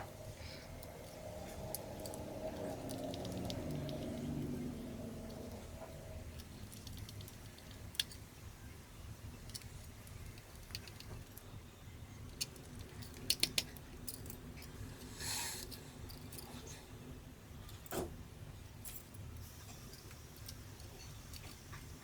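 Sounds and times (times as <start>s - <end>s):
hand tools clicking and tapping: 12.3s - 14.4s.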